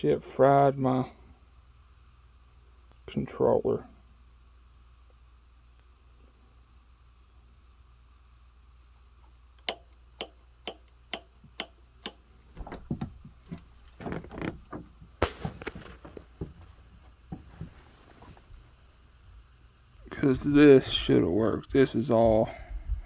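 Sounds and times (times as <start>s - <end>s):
handling knocks and clattering: 12.5s - 17.8s.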